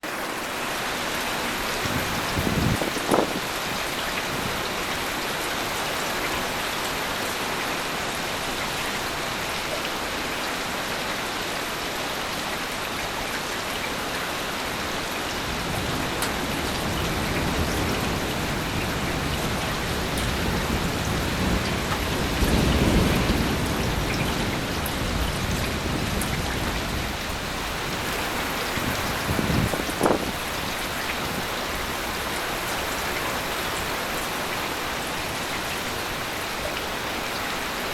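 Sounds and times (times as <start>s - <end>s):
heavy rain falling: 0.0s - 37.9s
sharp thunderclap: 1.8s - 3.5s, 15.7s - 27.2s
low rumble of thunder: 1.8s - 4.8s, 15.4s - 31.9s.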